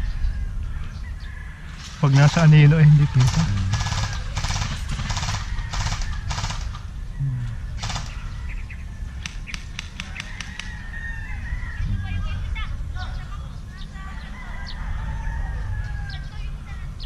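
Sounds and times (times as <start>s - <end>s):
airsoft gun full-auto bursts: 3.2s - 6.8s, 7.8s - 8.2s.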